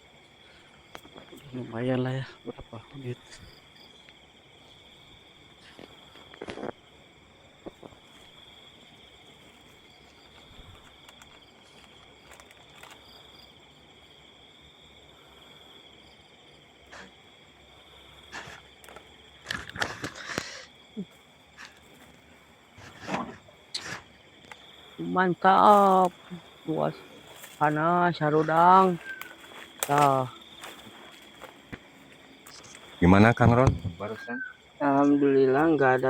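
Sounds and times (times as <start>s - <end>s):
crickets trilling: 0.0s - 36.0s
rustling and knocking: 33.4s - 34.2s.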